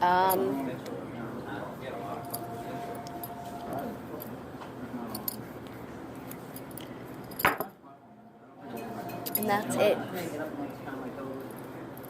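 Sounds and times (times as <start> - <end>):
murmur of voices: 0.0 - 5.4, 8.0 - 12.0
cutlery and dishes clinking: 8.7 - 9.8.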